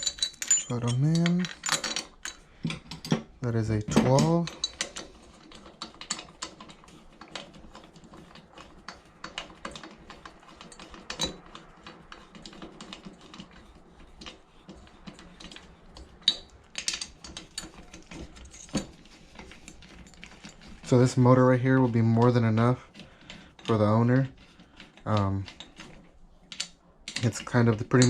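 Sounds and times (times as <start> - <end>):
metal clinks: 0.0 - 2.4.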